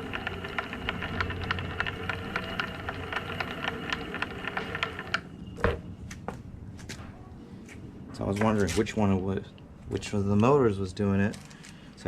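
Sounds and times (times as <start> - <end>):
rapid uneven clicking: 0.0 - 5.3
electric motors humming: 0.0 - 5.8.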